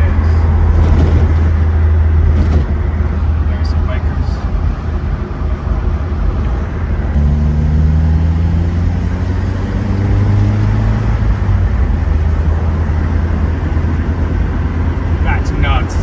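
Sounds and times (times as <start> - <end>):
truck engine and road rumble: 0.0 - 16.0
pitched engine drone: 7.1 - 16.0.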